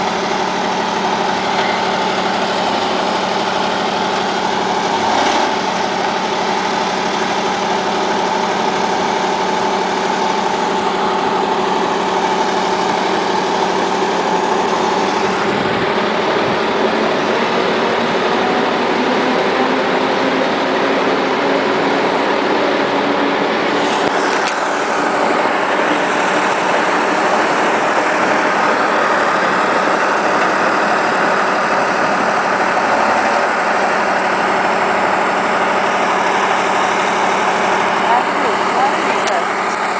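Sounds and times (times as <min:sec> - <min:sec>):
vehicle engine idling: 0:00.0 - 0:39.9.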